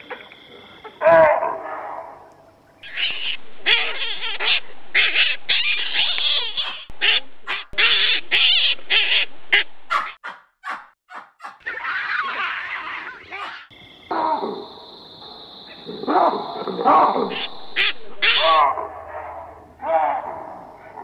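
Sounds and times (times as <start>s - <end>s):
baboons screeching calls: 2.8s - 13.7s, 15.7s - 18.9s.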